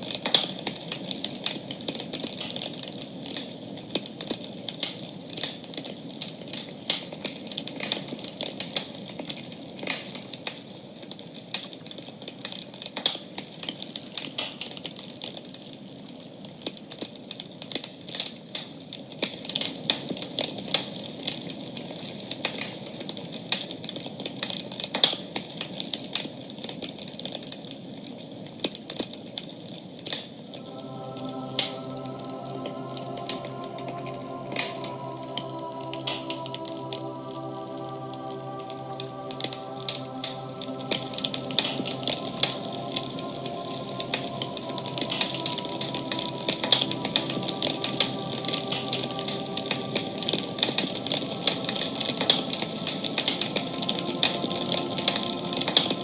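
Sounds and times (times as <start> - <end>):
soft steady hiss: 30.5 - 56.0.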